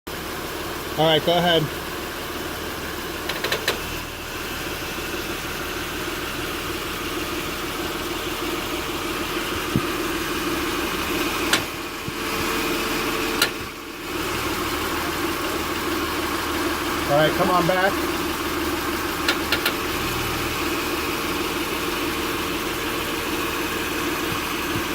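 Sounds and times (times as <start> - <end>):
car engine idling: 0.1 - 24.9
steering rack clicking: 3.2 - 3.8, 11.5 - 11.7, 13.4 - 13.7, 19.3 - 19.8.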